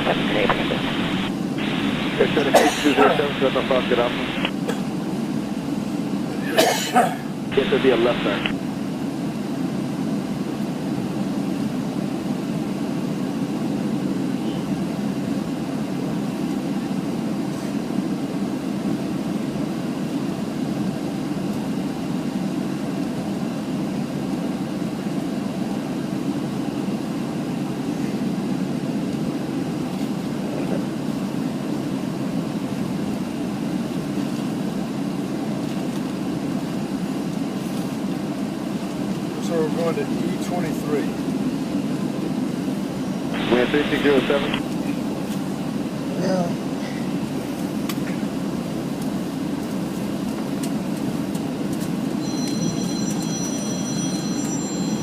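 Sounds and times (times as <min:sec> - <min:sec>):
airplane cabin rumble: 0:00.0 - 0:04.5, 0:07.5 - 0:08.6, 0:43.4 - 0:45.2.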